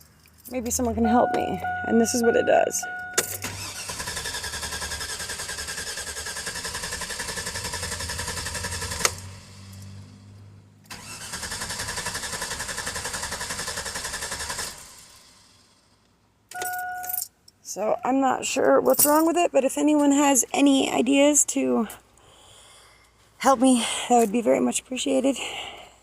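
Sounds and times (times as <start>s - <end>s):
engine cranking on starter: 3.2s - 10.1s, 10.9s - 15.9s.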